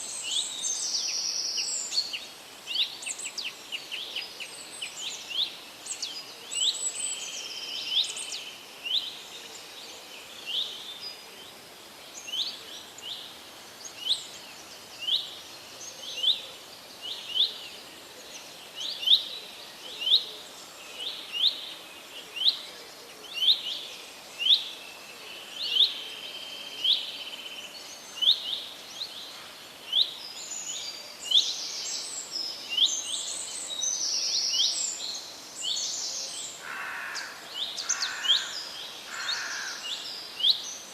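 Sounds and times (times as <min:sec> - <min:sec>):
steady outdoor hiss: 0:00.0 - 0:40.9
other birds calling: 0:36.6 - 0:40.0.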